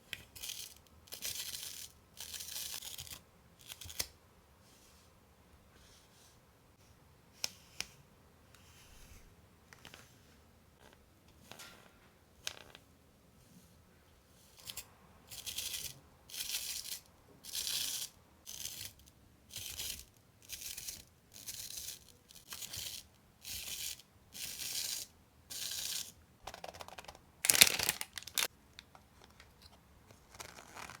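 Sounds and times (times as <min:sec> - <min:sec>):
paper tearing: 0:30.3 - 0:31.0.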